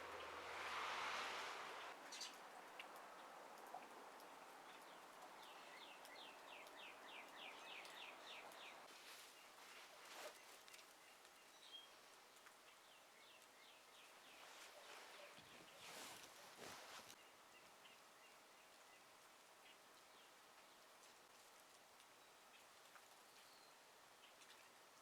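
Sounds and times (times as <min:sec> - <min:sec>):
soft whoosh: 0:00.0 - 0:02.0
outdoor hiss: 0:00.0 - 0:25.0.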